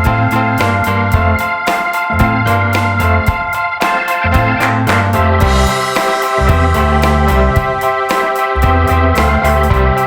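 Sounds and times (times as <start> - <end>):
organ-like keyboard chords: 0.0 - 10.0
steady bass line: 0.0 - 10.0.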